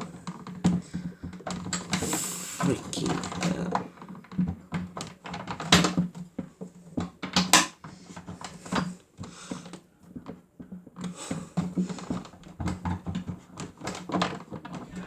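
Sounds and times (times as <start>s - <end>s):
plastic clicks and knocks: 3.2s - 8.9s.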